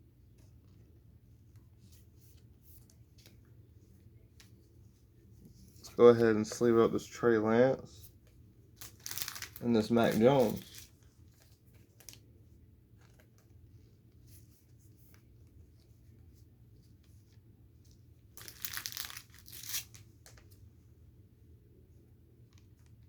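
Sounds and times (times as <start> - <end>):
plastic sleeve rustling: 7.9 - 20.7
plastic crinkling swish: 8.8 - 12.2, 18.4 - 20.6.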